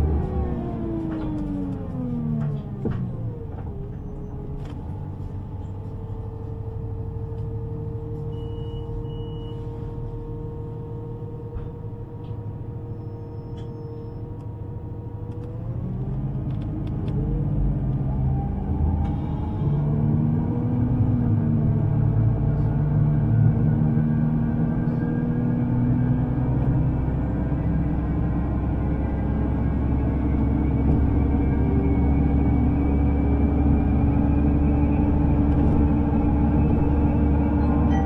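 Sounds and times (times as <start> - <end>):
steady train hum: 0.0 - 38.0.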